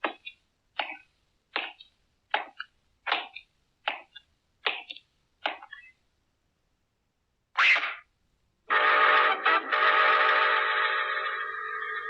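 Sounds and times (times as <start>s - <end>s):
cartoon sharp strokes: 7.6s - 8.0s.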